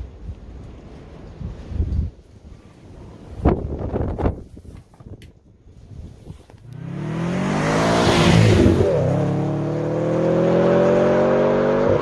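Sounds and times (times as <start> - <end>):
car engine accelerating: 6.7 - 12.0.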